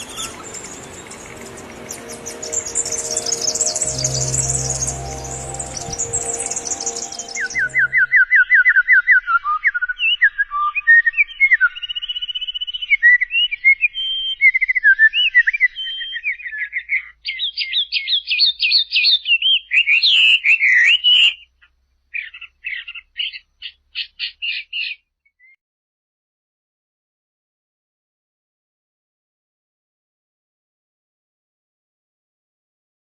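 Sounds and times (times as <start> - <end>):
bird singing whistled trills: 0.0 - 21.5.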